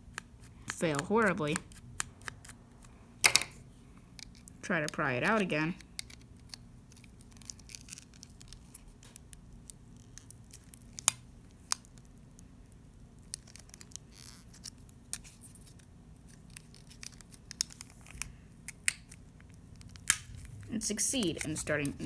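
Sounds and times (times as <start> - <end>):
prying tool clicks and snaps: 3.2 - 3.6.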